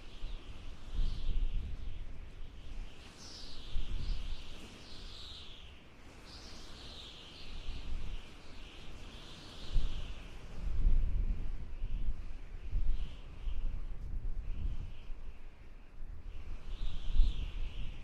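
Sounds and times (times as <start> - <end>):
wind whistling: 0.0 - 18.0
gusty wind rumble: 9.6 - 18.0.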